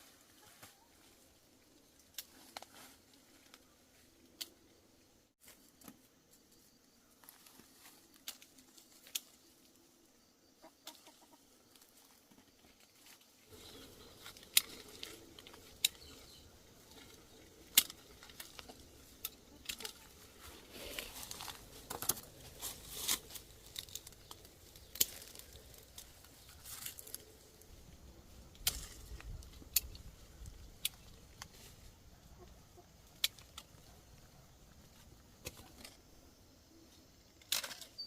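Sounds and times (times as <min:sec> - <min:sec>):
sharp snaps and crackles: 0:01.9 - 0:03.7, 0:07.2 - 0:09.8, 0:12.7 - 0:27.8, 0:28.4 - 0:31.8, 0:32.4 - 0:36.1, 0:37.3 - 0:38.0
chickens clucking: 0:10.6 - 0:11.5.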